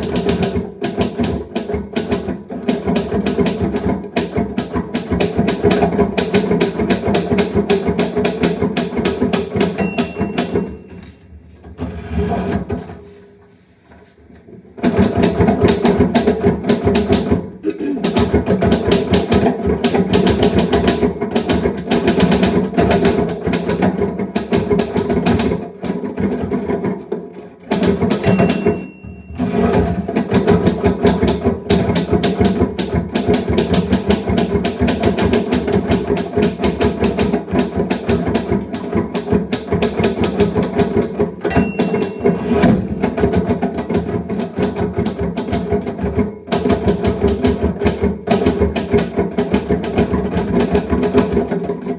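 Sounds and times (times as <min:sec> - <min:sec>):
typewriter bell ding: 0:09.7 - 0:11.2, 0:28.2 - 0:30.0, 0:41.4 - 0:43.4.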